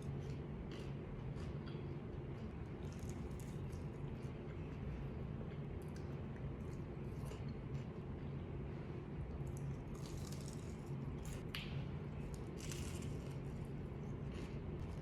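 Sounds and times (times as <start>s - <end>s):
person chewing crunchy food: 0.0s - 4.9s, 9.5s - 11.4s, 12.3s - 15.0s
low steady hum: 0.0s - 15.0s.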